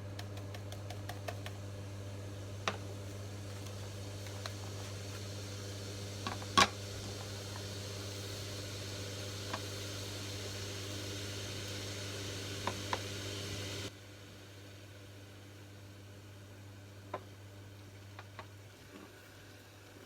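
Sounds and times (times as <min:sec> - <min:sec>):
appliance electrical hum: 0:00.0 - 0:20.0
sharp clicks and taps: 0:00.2 - 0:01.6.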